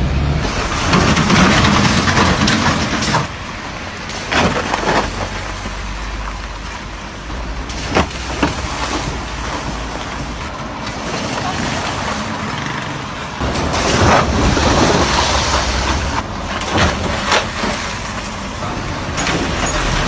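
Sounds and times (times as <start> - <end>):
road and tyre noise: 0.0 - 20.0
wheels thumping over bumps: 0.4 - 3.4, 7.3 - 20.0.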